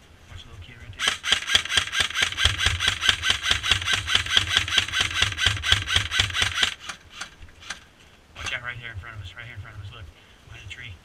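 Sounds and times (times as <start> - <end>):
gearbox motor hum: 1.0 - 7.8
airsoft gun full-auto rattle: 1.0 - 8.6.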